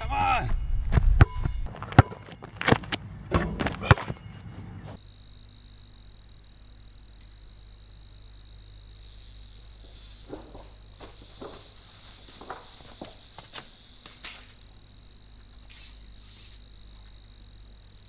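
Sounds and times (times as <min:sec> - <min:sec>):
high-pitched insect buzz: 0:04.8 - 0:18.0.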